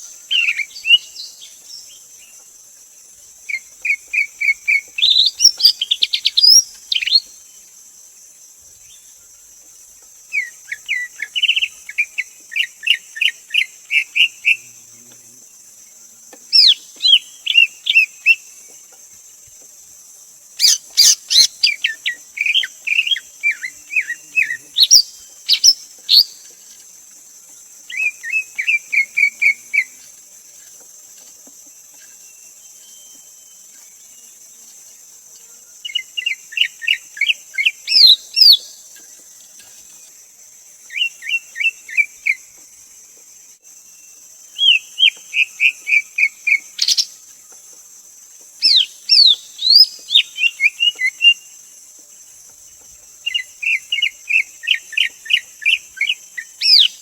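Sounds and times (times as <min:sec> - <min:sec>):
bird singing rapid whistled notes: 0:03.6 - 0:07.3, 0:20.6 - 0:26.4, 0:48.6 - 0:51.4, 0:53.3 - 0:57.0.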